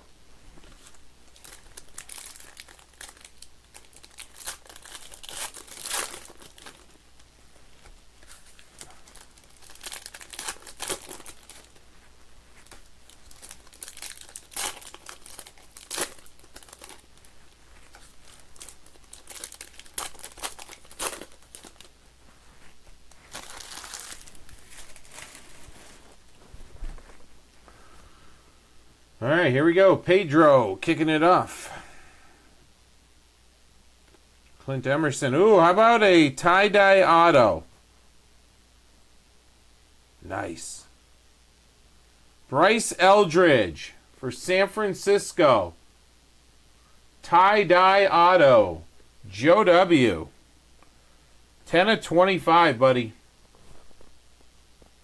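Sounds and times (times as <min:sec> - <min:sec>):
foil wrappers crinkling and tearing: 0:00.8 - 0:07.0, 0:07.8 - 0:26.3.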